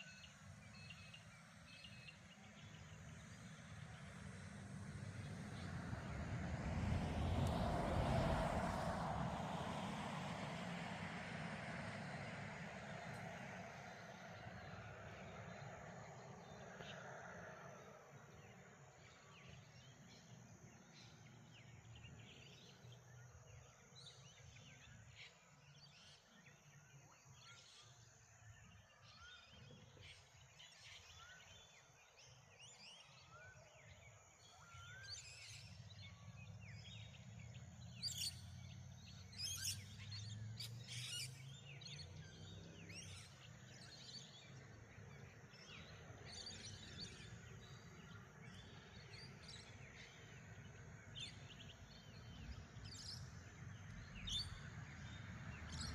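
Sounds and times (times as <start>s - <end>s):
small birds chirping and trilling: 13.2s - 55.9s.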